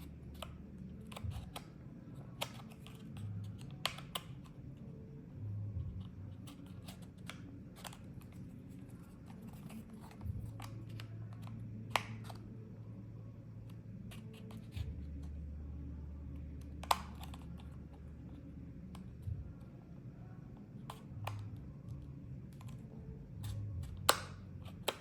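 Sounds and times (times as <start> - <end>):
plastic clicking and scraping: 0.0 - 4.6, 6.4 - 12.5, 16.6 - 19.4, 22.5 - 25.0
sharp plastic snaps: 0.0 - 4.6, 6.5 - 12.4, 16.6 - 17.8, 23.4 - 25.0
low steady hum: 0.0 - 25.0.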